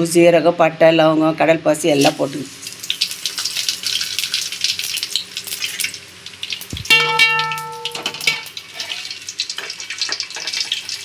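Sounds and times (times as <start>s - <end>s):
spices sizzling in hot oil: 1.8s - 11.0s
dull thump: 6.7s - 7.0s.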